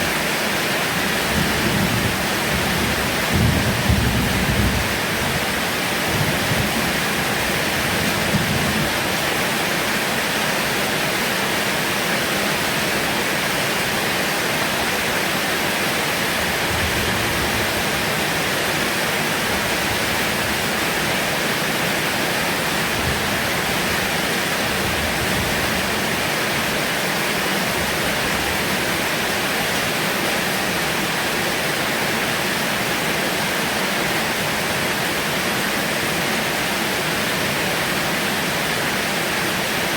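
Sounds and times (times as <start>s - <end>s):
heavy rain falling: 0.0s - 39.9s
low rumble of thunder: 1.3s - 5.4s.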